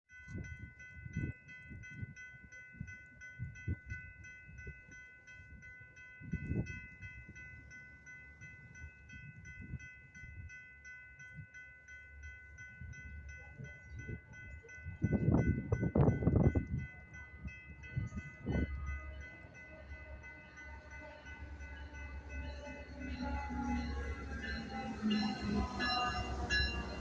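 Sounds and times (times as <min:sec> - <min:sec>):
crossing warning bell ringing: 0:00.1 - 0:27.0
wind on microphone: 0:00.3 - 0:02.2, 0:06.2 - 0:07.4, 0:13.6 - 0:18.9.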